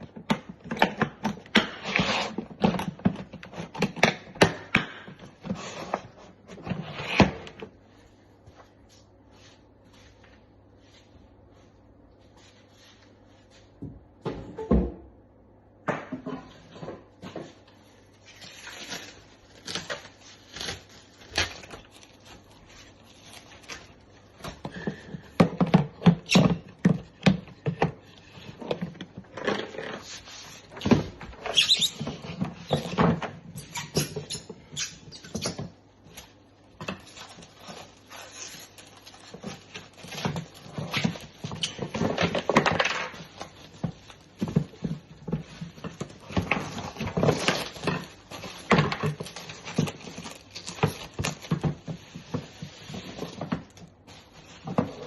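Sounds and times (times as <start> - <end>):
packaging knocks and rustling: 35.5 - 55.0.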